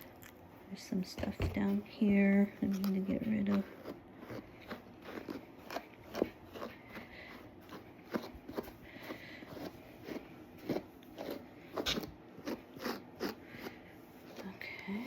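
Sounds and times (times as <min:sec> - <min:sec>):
brush scratching through dog fur: 0:02.9 - 0:14.6.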